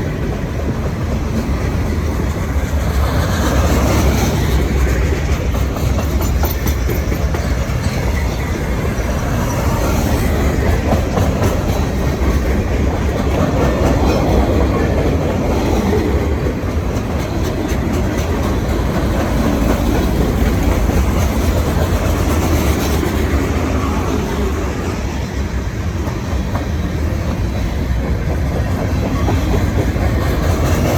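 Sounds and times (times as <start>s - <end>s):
freight train rumbling past: 0.0s - 30.9s.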